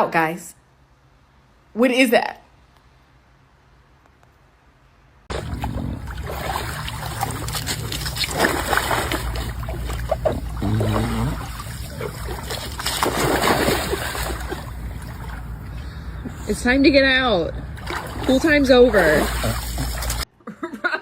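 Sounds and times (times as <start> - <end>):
water splashing in a pool: 5.3 - 16.4, 17.6 - 20.3.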